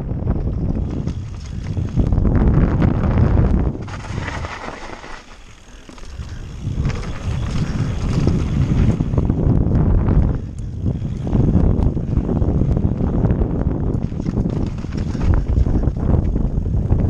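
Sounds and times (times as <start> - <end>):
tyres rumbling on dirt: 0.0 - 10.0
bike rattling: 0.0 - 17.0
wind buffeting microphone: 0.0 - 17.0.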